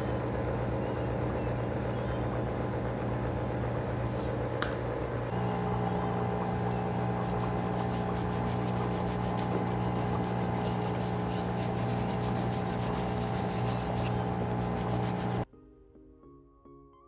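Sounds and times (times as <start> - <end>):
soft music: 0.0 - 3.0, 4.9 - 17.0
foot spa motor hum: 0.0 - 15.5
water churning in basin: 6.4 - 15.4.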